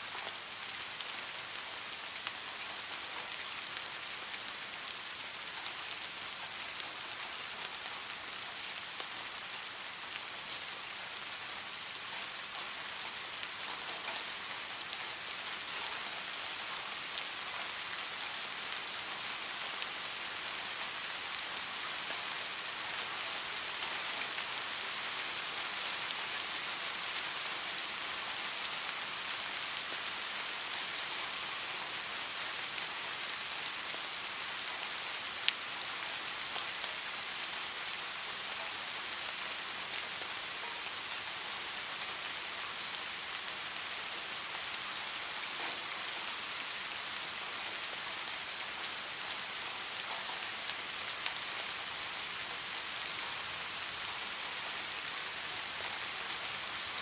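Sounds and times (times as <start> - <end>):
rain falling: 0.0 - 57.0.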